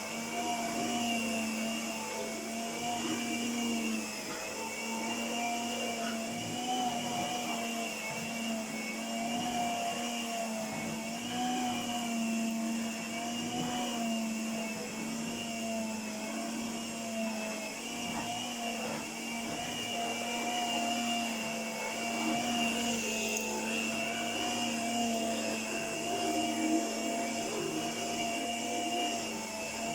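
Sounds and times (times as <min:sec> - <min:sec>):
electric carpet sweeper running: 0:00.0 - 0:29.9.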